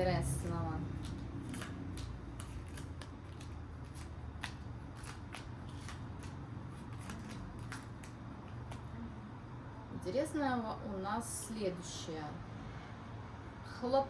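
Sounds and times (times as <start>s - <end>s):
playing cards clicking and snapping: 1.0s - 8.9s.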